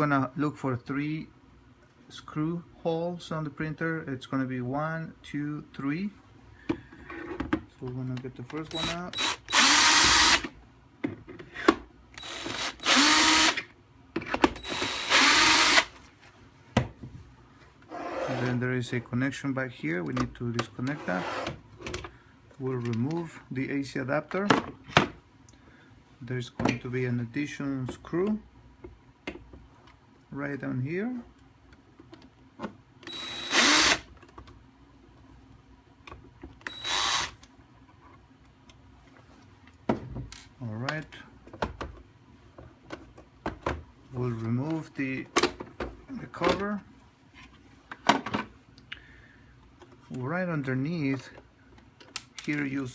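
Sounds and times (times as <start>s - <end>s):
power drill motor: 8.7s - 10.5s, 12.2s - 13.6s, 14.6s - 15.9s, 33.1s - 34.0s, 36.6s - 37.4s
screwdriver whirring: 8.7s - 10.5s, 12.2s - 13.6s, 14.6s - 15.9s, 33.0s - 34.1s, 36.6s - 37.4s
drill bit and screw clicks: 36.6s - 37.4s.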